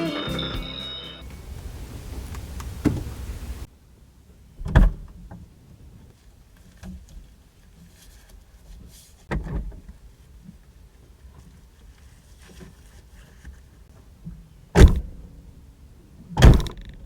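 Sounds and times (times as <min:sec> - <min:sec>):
truck door shutting: 0:00.0 - 0:03.7, 0:04.6 - 0:05.2, 0:14.8 - 0:15.2
steady rushing noise: 0:01.2 - 0:03.7.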